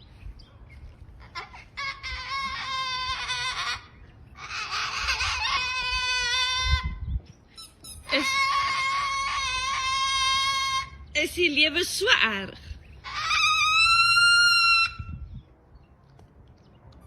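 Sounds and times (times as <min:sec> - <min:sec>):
cockatoo screeching: 0:01.2 - 0:11.1, 0:13.0 - 0:15.2.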